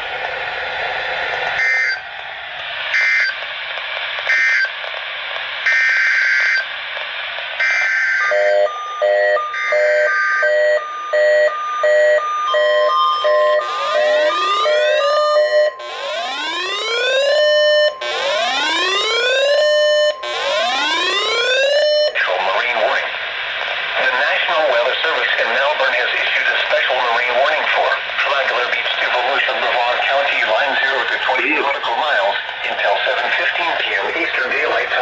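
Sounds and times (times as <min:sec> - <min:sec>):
radio hiss: 0:00.0 - 0:08.5, 0:22.1 - 0:35.0
screeching data bursts: 0:07.6 - 0:17.3
pulsing electronic beeps: 0:08.2 - 0:22.1
steady alert tone: 0:08.2 - 0:22.1.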